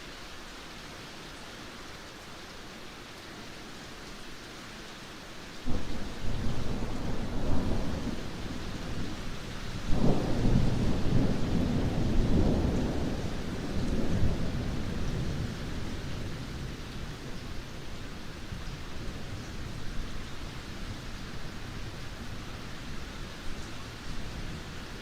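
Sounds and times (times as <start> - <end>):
steady rain: 0.0 - 25.0
thunder rumbling: 5.7 - 16.7.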